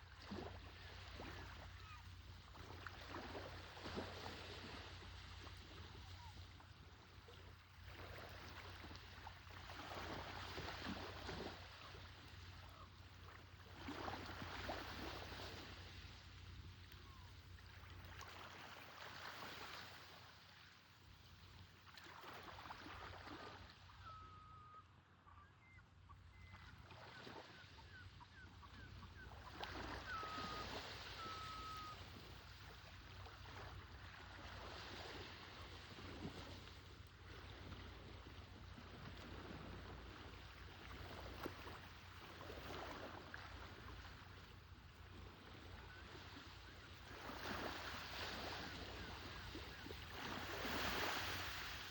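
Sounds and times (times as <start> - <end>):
bird whistling calls: 24.0 - 26.7, 29.9 - 32.1
waves washing on shore: 29.4 - 36.6, 45.5 - 51.9.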